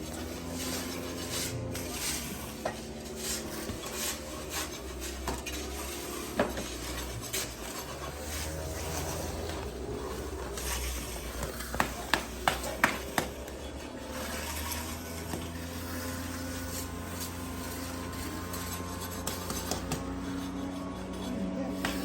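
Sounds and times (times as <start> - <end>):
low engine hum: 0.0 - 22.0.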